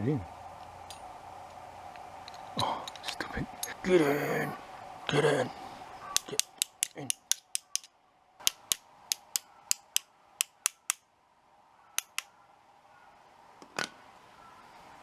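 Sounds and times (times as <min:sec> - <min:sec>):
metal-on-metal taps: 0:06.2 - 0:11.0.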